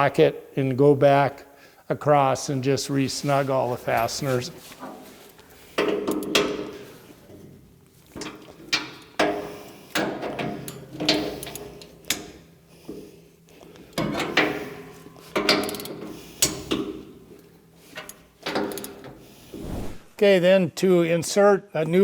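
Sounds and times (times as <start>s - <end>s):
ratchet metallic clanks: 8.1s - 12.5s, 13.8s - 19.3s.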